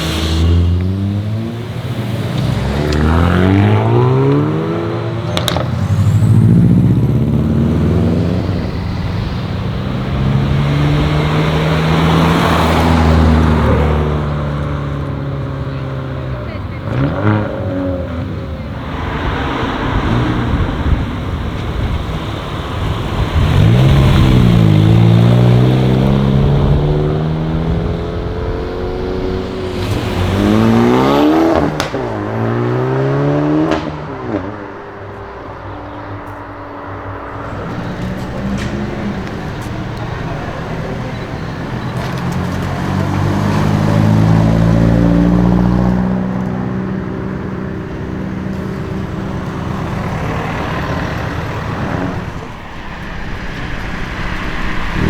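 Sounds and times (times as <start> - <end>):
car engines revving: 0.0 - 55.0
exhaust pops: 5.2 - 13.9, 16.5 - 32.4, 37.4 - 55.0.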